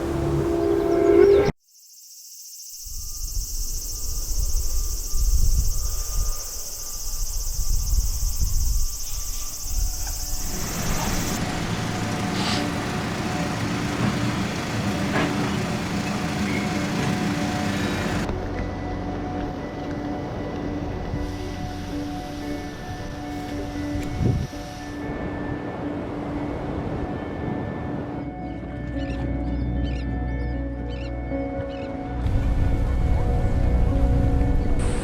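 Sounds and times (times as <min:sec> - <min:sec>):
insect drone: 0:00.0 - 0:18.3, 0:34.8 - 0:35.0
vehicle engine rumble: 0:10.1 - 0:18.5.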